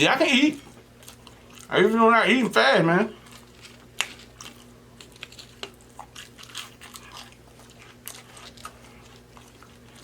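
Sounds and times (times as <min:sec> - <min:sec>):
chewing and biting sandwich: 0:00.6 - 0:01.8, 0:03.1 - 0:10.0.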